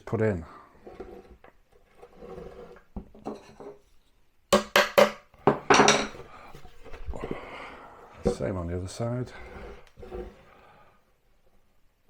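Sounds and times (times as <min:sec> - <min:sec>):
sharp knocks on chipboard: 0:04.6 - 0:05.6.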